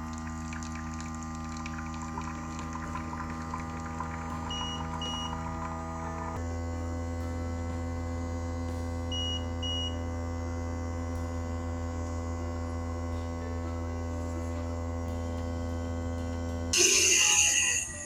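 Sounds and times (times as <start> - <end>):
electric pump humming: 0.0 - 18.0
short high beeps: 16.8 - 18.0.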